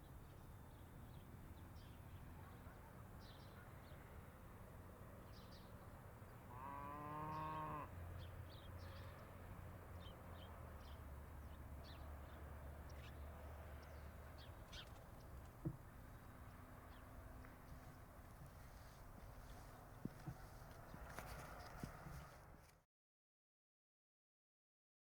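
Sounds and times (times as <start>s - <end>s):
cow mooing: 6.5s - 7.9s.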